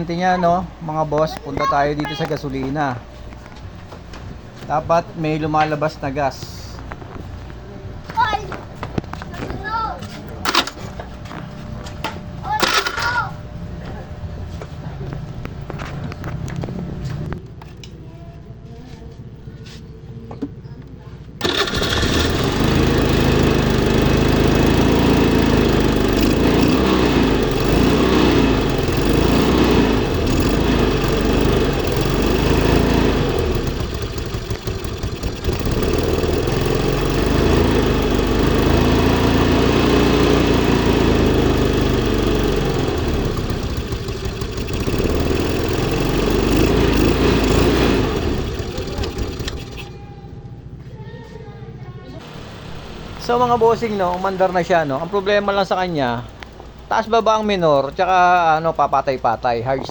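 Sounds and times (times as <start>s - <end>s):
motorcycle engine idling unevenly: 21.4s - 51.0s, 52.2s - 59.9s.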